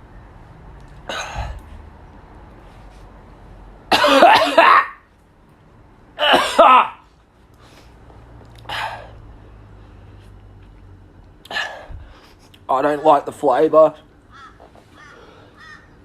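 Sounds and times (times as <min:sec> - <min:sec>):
man coughing and clearing throat: 0:01.1 - 0:01.6, 0:03.9 - 0:05.0, 0:06.2 - 0:07.0.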